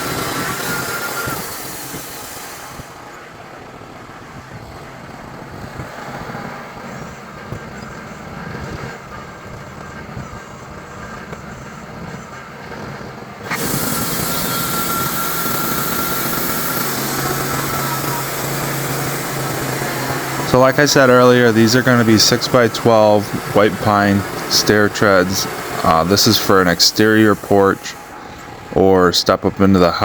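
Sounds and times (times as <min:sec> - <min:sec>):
gasoline engine running: 0:00.0 - 0:30.0
steady high tone: 0:13.5 - 0:30.0.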